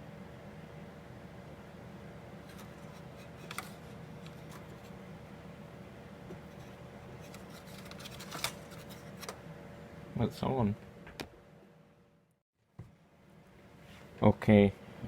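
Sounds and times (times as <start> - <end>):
steady low hum: 0.0 - 15.0.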